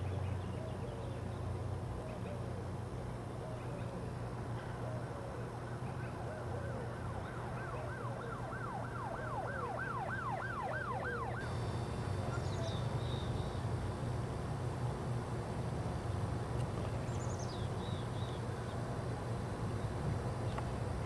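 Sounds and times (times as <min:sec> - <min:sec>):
emergency vehicle siren: 0:05.7 - 0:12.7.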